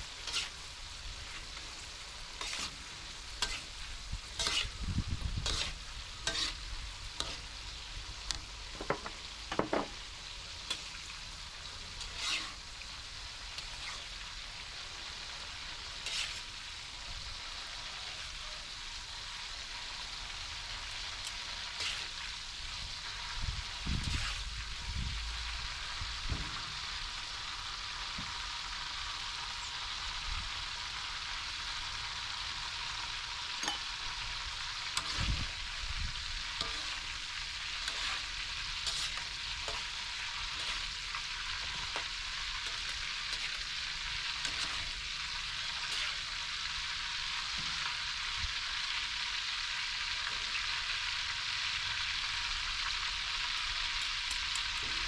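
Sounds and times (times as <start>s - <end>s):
food sizzling in a pan: 0.0s - 55.0s
utensil scraping and tapping pan: 8.8s - 9.9s, 36.6s - 37.0s.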